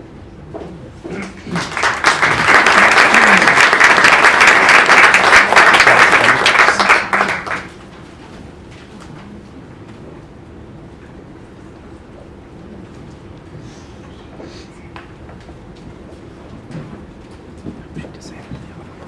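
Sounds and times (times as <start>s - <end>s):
audience applauding: 1.2s - 7.8s.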